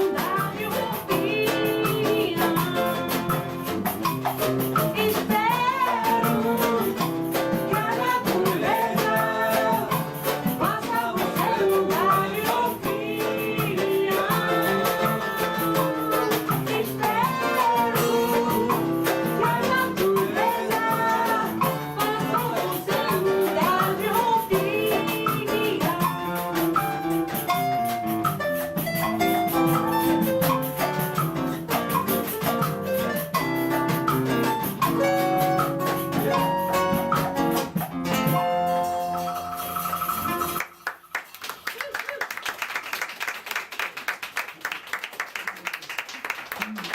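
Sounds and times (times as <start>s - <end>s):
person singing a melody: 0.0s - 3.9s, 4.8s - 27.3s, 34.4s - 37.1s
guitars strumming: 0.0s - 40.9s
hand percussion: 0.0s - 42.2s.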